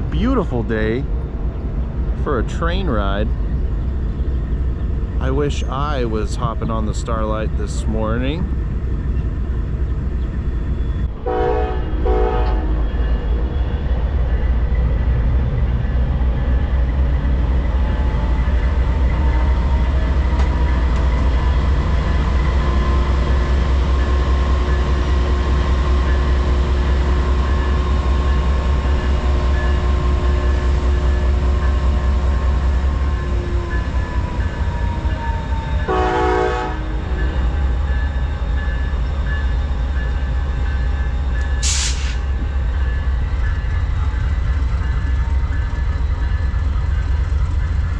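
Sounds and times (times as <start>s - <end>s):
diesel locomotive engine rumble: 0.0s - 47.9s
train horn toots: 11.2s - 13.2s, 35.9s - 37.4s.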